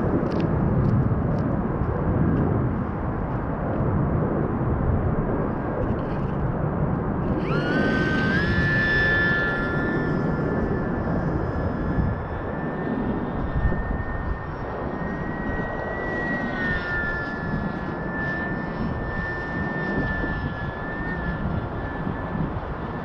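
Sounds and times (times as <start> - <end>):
wind buffeting microphone: 0.0 - 23.0
electric propeller whining: 5.3 - 23.0.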